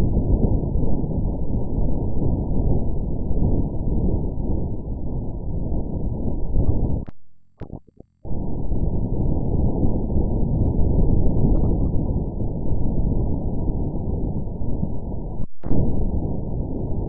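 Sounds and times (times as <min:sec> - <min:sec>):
low rough wind rumble: 0:00.0 - 0:07.1, 0:08.2 - 0:17.0
short blips: 0:11.5 - 0:12.4.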